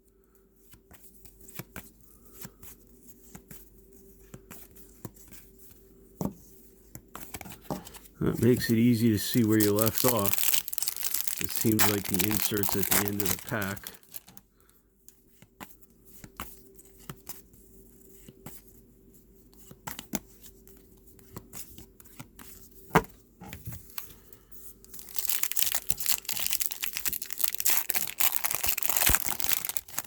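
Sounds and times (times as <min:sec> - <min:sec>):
foil wrapper tearing and crinkling: 0:08.4 - 0:14.3, 0:25.0 - 0:30.0.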